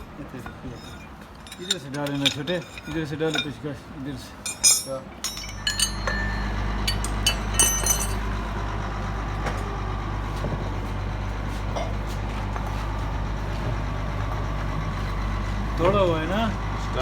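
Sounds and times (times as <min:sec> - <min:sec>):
metal parts clinking: 0:00.0 - 0:08.4
heavy engine idling: 0:05.3 - 0:17.0.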